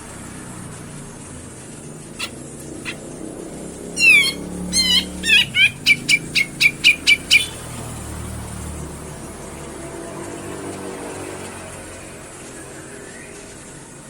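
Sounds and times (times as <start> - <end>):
bird calls: 2.1 - 8.0.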